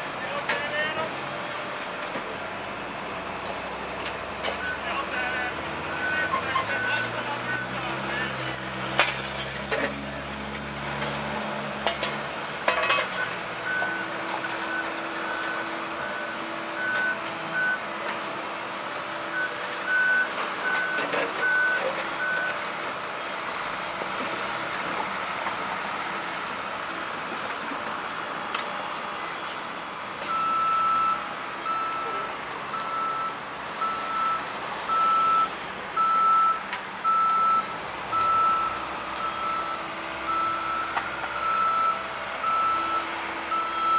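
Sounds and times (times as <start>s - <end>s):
backup alarm beeping: 30.3s - 43.9s.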